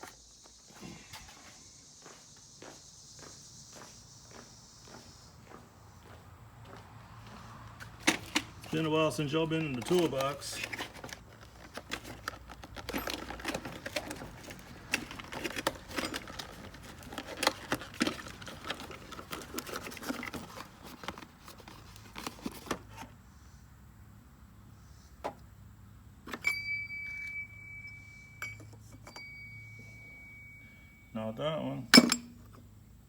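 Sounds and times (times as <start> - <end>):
metal tools rattling in a toolbox: 8.1 - 21.2, 31.9 - 32.4.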